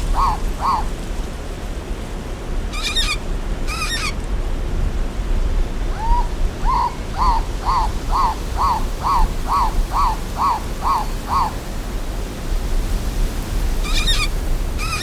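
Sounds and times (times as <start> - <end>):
bird calling: 0.0 - 1.0, 2.7 - 4.2, 5.8 - 11.8, 13.8 - 15.0
warbling bird calls: 0.0 - 1.0, 2.7 - 4.2, 5.8 - 12.0, 13.8 - 15.0
low background rumble: 0.0 - 15.0.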